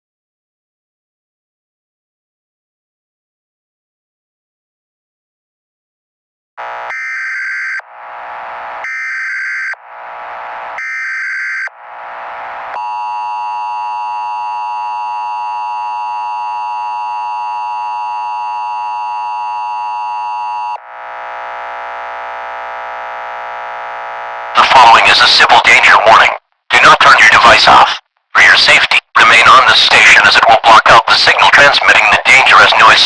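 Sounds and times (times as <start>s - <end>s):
harsh noisy tone: 6.6s - 21.8s, 24.5s - 33.0s.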